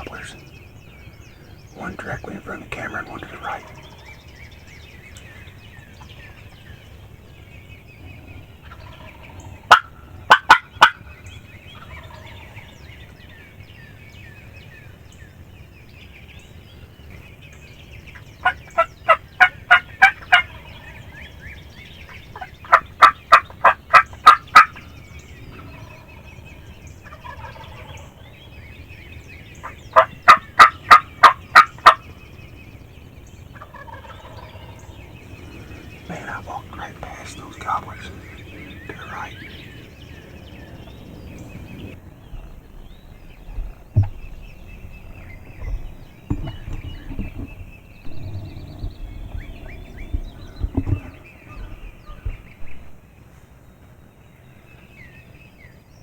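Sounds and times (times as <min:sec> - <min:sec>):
faint birdsong: 0:00.0 - 0:56.0
turkey yelps: 0:09.7 - 0:11.0, 0:22.3 - 0:24.8, 0:29.6 - 0:32.0.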